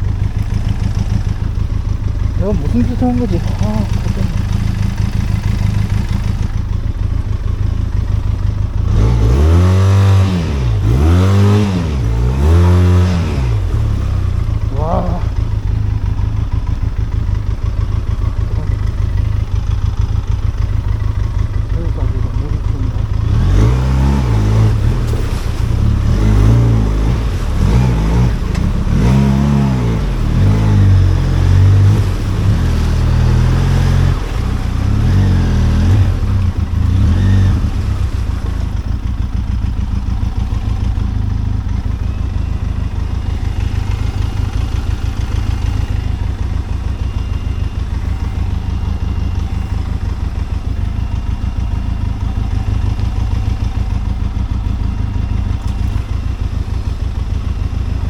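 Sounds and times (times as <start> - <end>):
motorcycle engine revving: 0.0 - 58.0.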